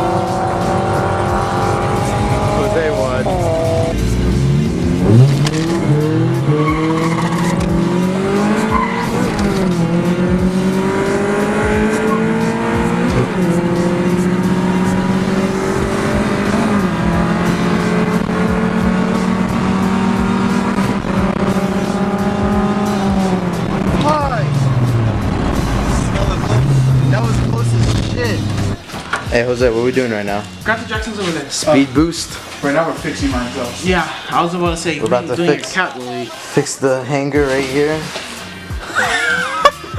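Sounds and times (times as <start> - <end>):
car engine revving at full throttle: 0.0 - 29.3.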